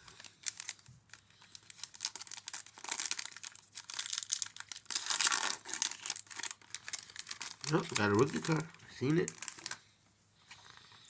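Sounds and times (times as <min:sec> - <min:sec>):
wrapper tearing and crinkling: 0:00.0 - 0:09.8.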